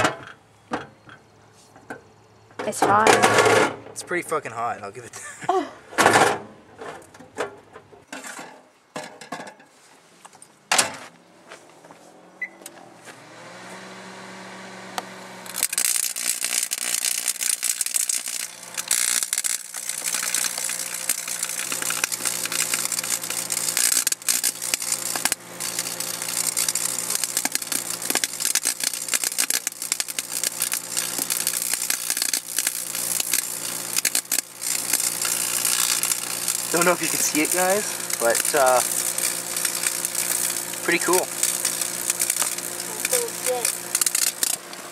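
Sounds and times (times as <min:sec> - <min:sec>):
microwave oven humming: 0:12.4 - 0:44.9
loud crackling and sizzling: 0:13.3 - 0:44.9.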